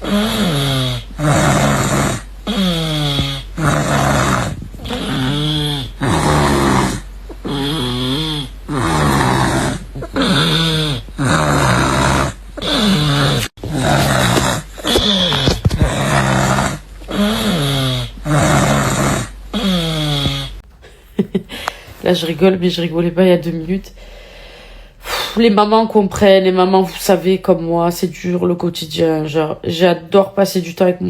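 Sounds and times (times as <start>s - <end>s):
loud snoring: 0.0s - 20.6s.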